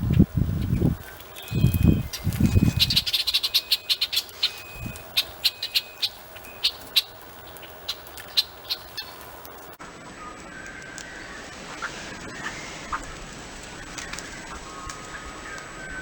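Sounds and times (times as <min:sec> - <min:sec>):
sharp bird calls: 0:00.1 - 0:16.0
thin bird whistles: 0:01.4 - 0:07.0.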